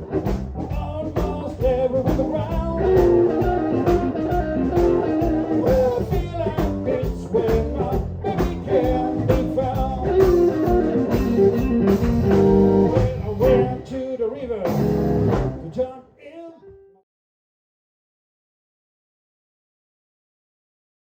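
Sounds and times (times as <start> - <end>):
electric guitar: 0.0 - 15.8
live blues band playing: 0.0 - 15.8.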